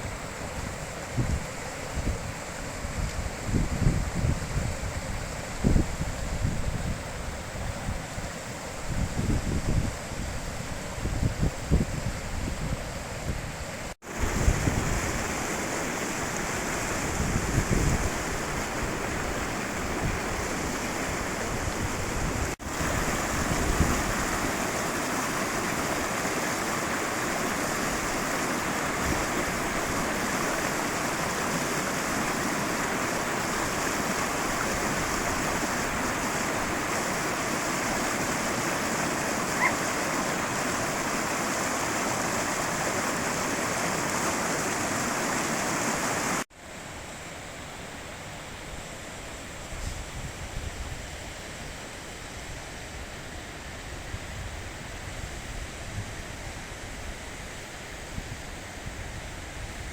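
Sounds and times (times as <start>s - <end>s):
wind buffeting microphone: 0.6s - 8.0s, 8.8s - 24.6s
river rushing over rocks: 14.0s - 47.0s.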